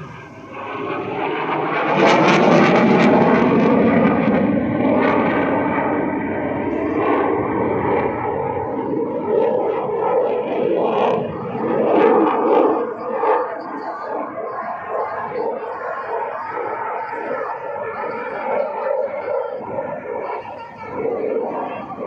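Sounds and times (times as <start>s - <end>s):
jet aircraft flying past: 0.0s - 22.0s.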